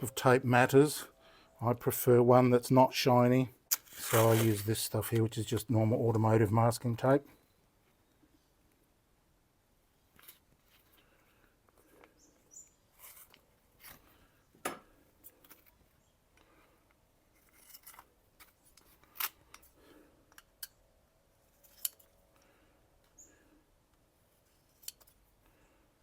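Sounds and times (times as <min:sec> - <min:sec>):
masking tape snipping and rustling: 0:03.7 - 0:04.7.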